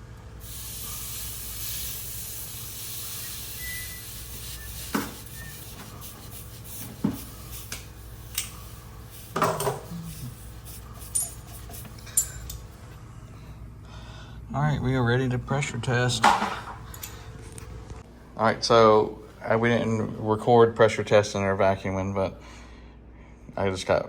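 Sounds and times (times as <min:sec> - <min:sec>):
steady hiss: 0:00.4 - 0:12.2
metal tools clinking: 0:11.0 - 0:12.7.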